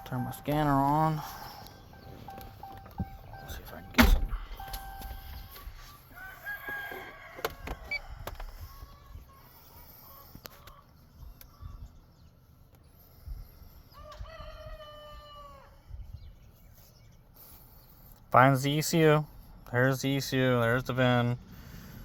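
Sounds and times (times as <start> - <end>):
rooster crowing: 6.1 - 9.0, 14.0 - 15.8.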